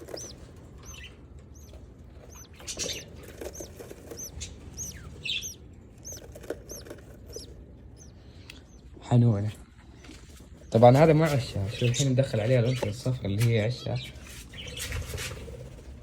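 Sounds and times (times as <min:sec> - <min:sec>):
wings flapping: 0:00.0 - 0:00.8, 0:01.6 - 0:07.6
budgerigars chirping: 0:00.0 - 0:08.9, 0:09.8 - 0:15.8.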